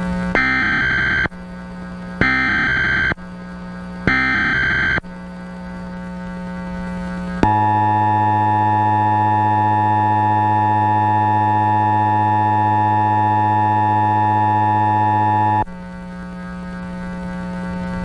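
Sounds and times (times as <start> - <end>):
low electrical hum: 0.0 - 18.0
two-tone alert alarm: 0.4 - 1.3, 2.2 - 3.2, 4.1 - 5.0.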